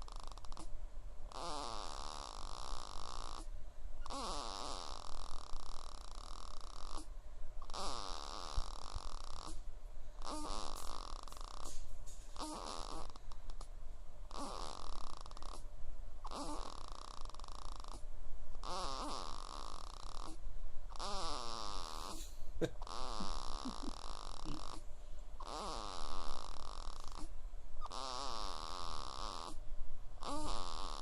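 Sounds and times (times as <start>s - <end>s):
baby snoring: 0.0s - 0.7s, 1.3s - 9.6s, 10.2s - 11.8s, 12.4s - 13.7s, 14.3s - 24.8s, 25.4s - 29.6s, 30.2s - 31.0s.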